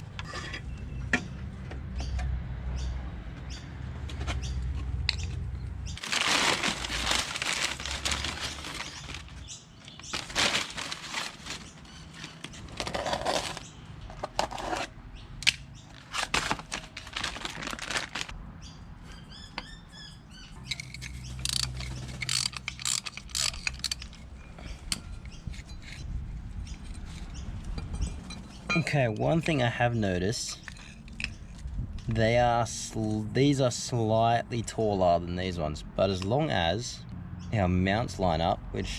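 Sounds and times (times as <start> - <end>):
tool scrapes and rustles: 0.1 - 0.8, 10.0 - 14.9
metallic clicks and clinks: 20.6 - 26.0.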